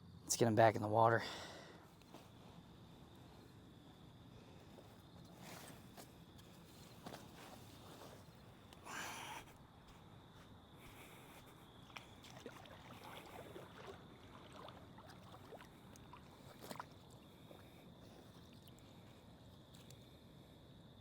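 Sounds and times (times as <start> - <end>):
water sloshing and splashing: 11.8 - 19.8.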